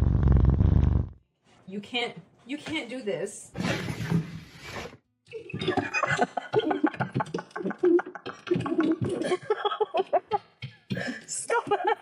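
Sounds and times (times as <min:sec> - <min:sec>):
person making choppy vocal sounds: 0:07.4 - 0:10.2.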